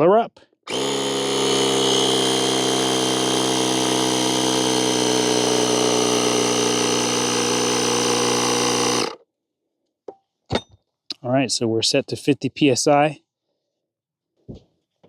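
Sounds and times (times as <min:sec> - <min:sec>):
air compressor droning: 0:00.7 - 0:09.2.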